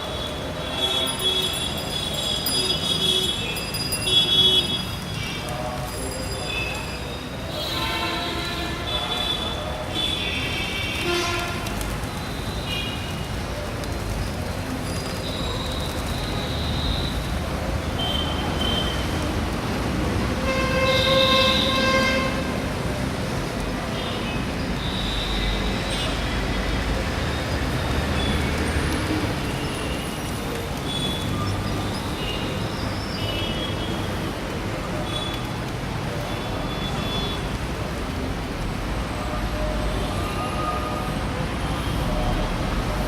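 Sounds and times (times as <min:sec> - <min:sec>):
road traffic: 0:00.0 - 0:43.0
vehicle horn: 0:07.5 - 0:11.8, 0:20.4 - 0:22.5.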